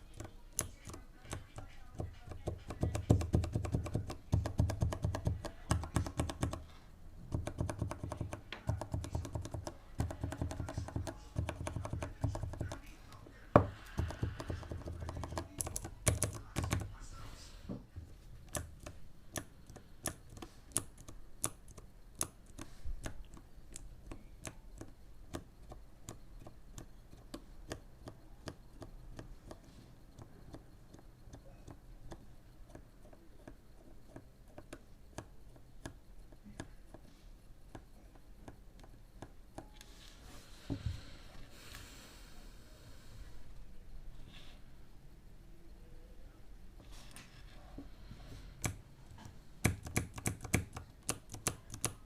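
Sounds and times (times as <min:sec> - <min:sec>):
keyboard switches clicking: 0:48.6 - 0:52.0.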